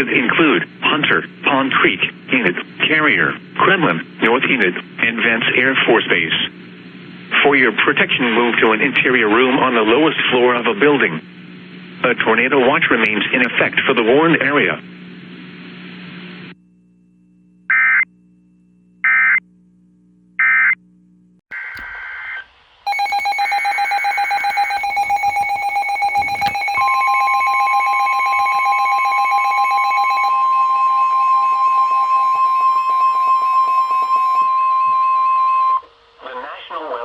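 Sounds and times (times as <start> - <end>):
pulsing electronic alert tone: 22.9 - 30.4
steady electronic tone: 22.9 - 36.1.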